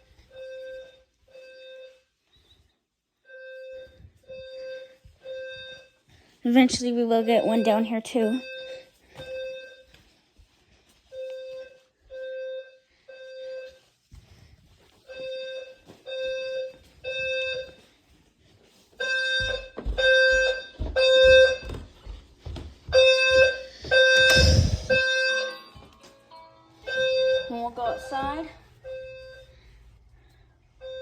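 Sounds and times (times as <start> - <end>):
fire alarm horn blasts: 3.3 - 9.9, 19.0 - 21.8, 22.9 - 29.8, 30.8 - 31.0.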